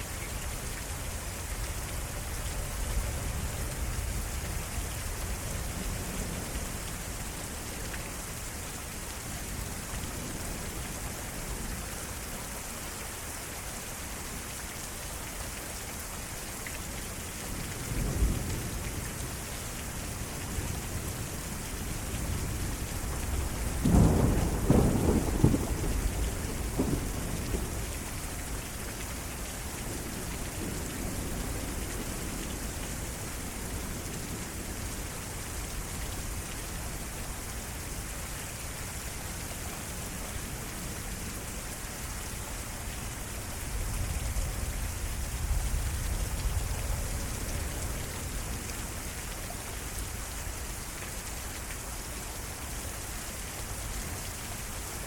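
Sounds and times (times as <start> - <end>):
heavy rain falling: 0.0 - 55.0
thunder rumbling: 23.2 - 27.9.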